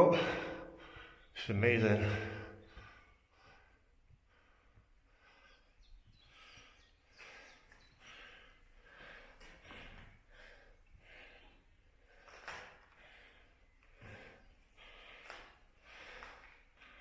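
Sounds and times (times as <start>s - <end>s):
man breathing hard: 0.0s - 17.0s.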